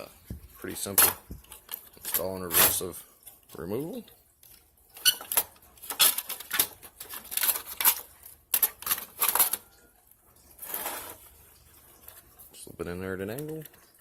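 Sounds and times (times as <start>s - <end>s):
hard parts clicking and clattering: 0.3s - 3.6s, 4.4s - 9.9s.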